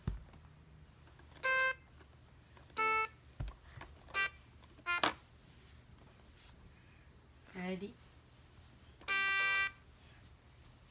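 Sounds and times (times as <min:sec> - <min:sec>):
toy keyboard electronic notes: 0:01.4 - 0:01.8, 0:02.8 - 0:03.2, 0:04.1 - 0:05.2, 0:09.1 - 0:09.8.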